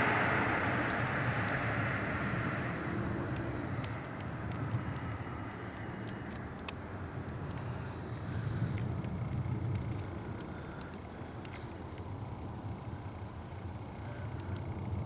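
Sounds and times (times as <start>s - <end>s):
distant road traffic rumble: 0.0s - 15.0s
faint ticks: 3.3s - 15.0s.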